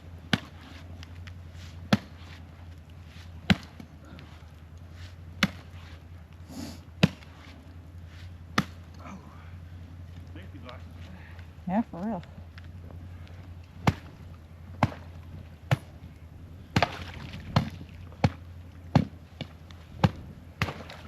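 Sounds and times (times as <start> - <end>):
axe chopping ice: 1.9 - 2.3, 3.4 - 3.8, 5.4 - 5.7, 7.0 - 7.4, 8.5 - 8.9, 14.8 - 15.1, 16.8 - 21.0.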